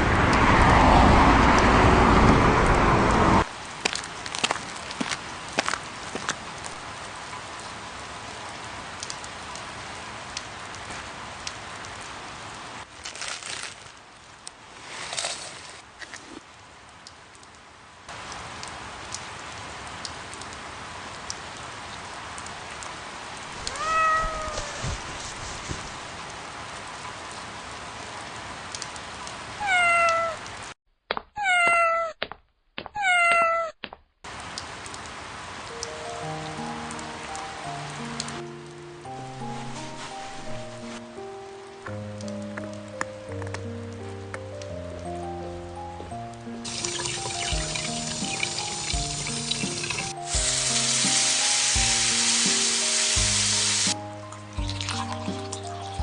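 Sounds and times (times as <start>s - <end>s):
cat meowing: 23.6s - 25.1s, 29.6s - 30.4s, 31.4s - 32.2s, 33.0s - 33.8s
steady hiss: 39.1s - 41.0s, 46.7s - 54.0s.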